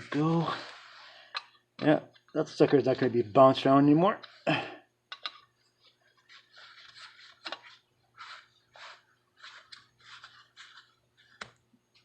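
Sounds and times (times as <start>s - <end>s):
faint scraping and rustling: 5.4s - 12.0s.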